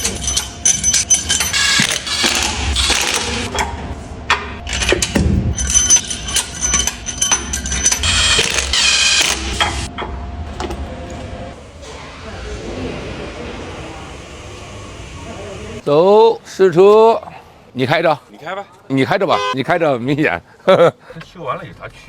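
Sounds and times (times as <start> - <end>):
metal tools clinking and rattling: 0.0 - 3.6, 4.6 - 9.9.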